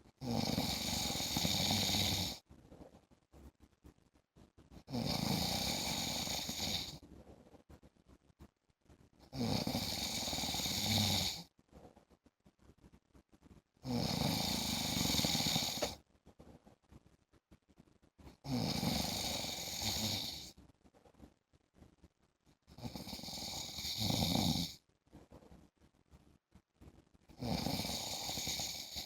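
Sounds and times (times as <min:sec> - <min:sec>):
man snoring: 0:00.2 - 0:02.4, 0:04.9 - 0:07.0, 0:09.3 - 0:11.4, 0:13.8 - 0:16.0, 0:18.5 - 0:20.5, 0:22.8 - 0:24.8, 0:27.4 - 0:29.0.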